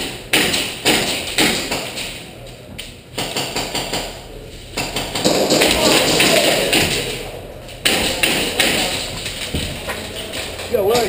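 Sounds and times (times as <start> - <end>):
airsoft gun shots: 4.9 - 7.1, 7.8 - 9.0.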